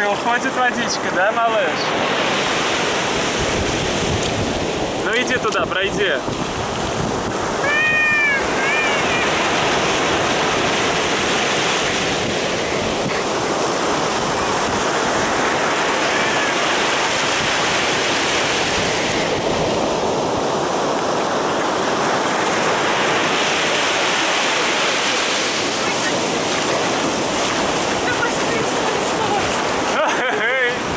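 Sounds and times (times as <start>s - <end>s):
heavy surf breaking on beach: 0.0s - 30.9s.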